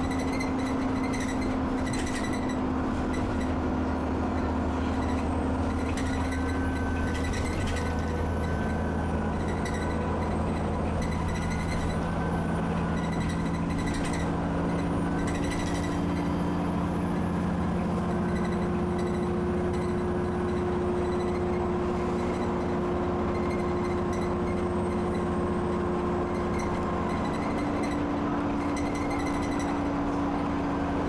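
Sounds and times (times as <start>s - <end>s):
bus engine drone: 0.0s - 31.0s.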